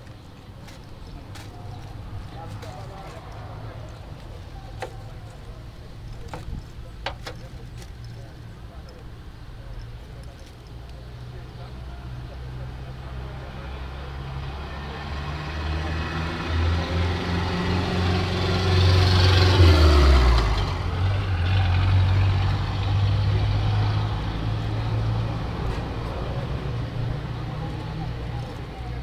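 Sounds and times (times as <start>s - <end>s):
road noise: 0.0s - 29.0s
vehicle passing: 11.8s - 29.0s.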